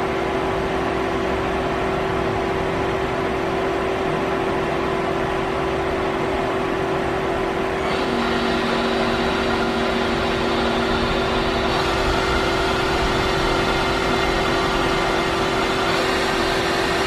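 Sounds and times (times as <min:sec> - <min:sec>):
lathe machine humming: 0:00.0 - 0:17.0
machine whir and hiss: 0:07.6 - 0:17.0.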